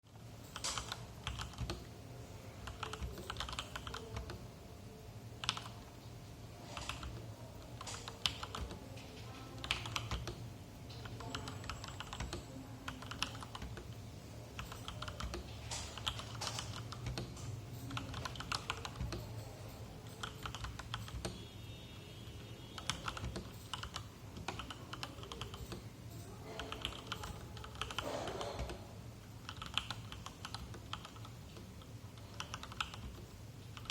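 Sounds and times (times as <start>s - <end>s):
mechanical keyboard keystroke clacks: 14.6s - 19.5s, 22.8s - 25.8s, 29.4s - 33.9s.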